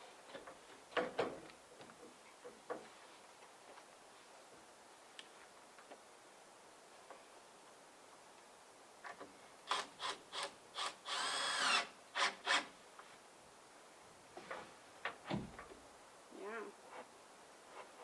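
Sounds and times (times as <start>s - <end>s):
light knocks: 15.0s - 15.8s.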